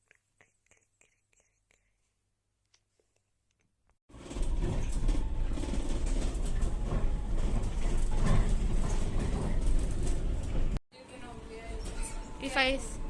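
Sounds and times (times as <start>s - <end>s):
moving bus rumble and rattle: 4.1s - 13.0s.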